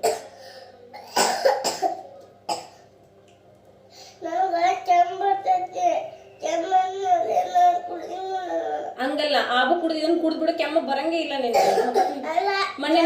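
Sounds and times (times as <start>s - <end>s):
child coughing: 0.0s - 0.3s, 1.0s - 2.8s, 11.5s - 12.7s.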